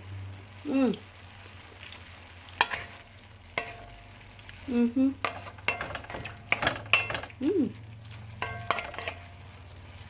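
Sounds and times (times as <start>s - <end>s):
metal utensil scraping a pan: 2.6s - 4.2s, 5.2s - 10.0s.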